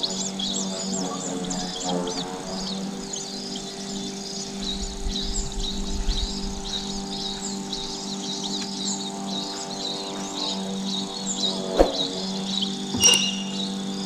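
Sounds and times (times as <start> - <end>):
baby birds chirping: 12.4 - 14.0.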